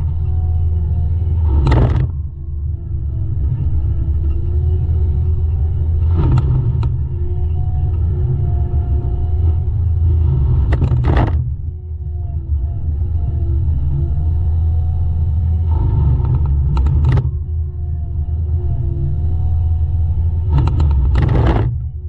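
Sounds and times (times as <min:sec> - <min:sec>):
heavy diesel machinery rumbling: 0:00.0 - 0:22.0.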